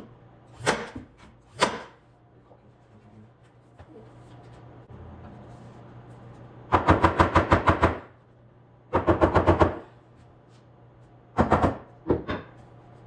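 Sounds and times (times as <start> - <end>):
power tool hammering: 0.6 - 2.0, 6.7 - 8.1, 8.9 - 9.8, 11.4 - 12.4.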